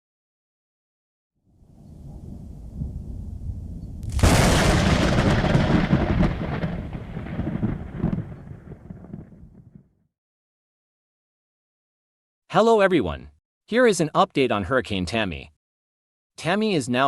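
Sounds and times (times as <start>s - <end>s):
thunder rumbling and cracking: 2.0s - 10.0s.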